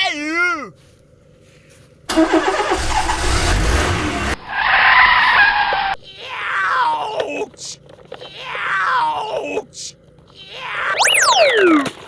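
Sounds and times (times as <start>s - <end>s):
high-pitched tire skid: 2.1s - 6.0s.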